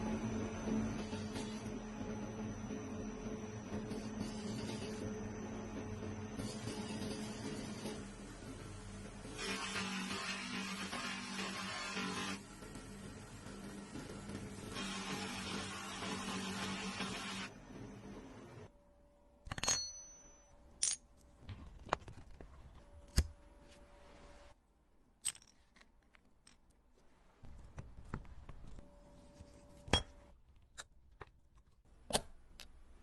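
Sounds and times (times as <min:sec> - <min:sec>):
small metal parts clicking and clinking: 0:25.2 - 0:26.8.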